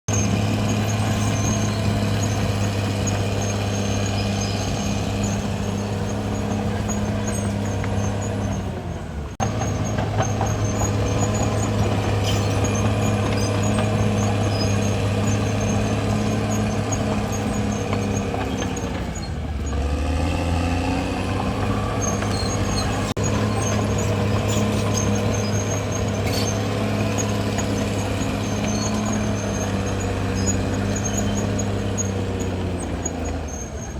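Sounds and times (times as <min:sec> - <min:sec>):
bulldozer diesel engine running: 0:00.0 - 0:33.9
running gear squeaks: 0:00.0 - 0:33.9.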